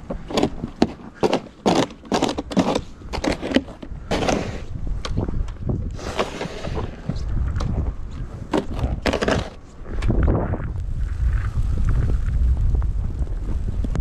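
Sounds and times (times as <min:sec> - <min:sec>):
snow shovel scraping snow: 0:00.3 - 0:04.8, 0:06.0 - 0:07.0, 0:08.9 - 0:09.6
wind rumbling on microphone: 0:02.3 - 0:14.0.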